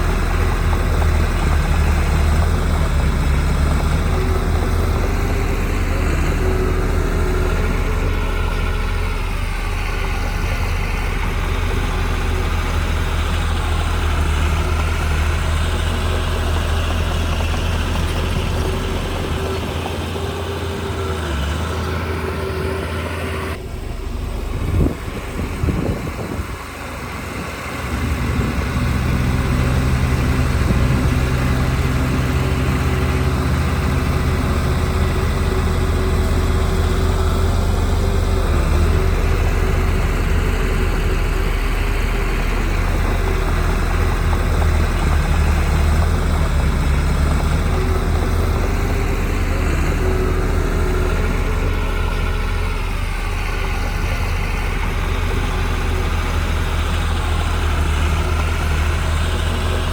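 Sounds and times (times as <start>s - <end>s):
heavy diesel engine running: 0.0s - 59.9s.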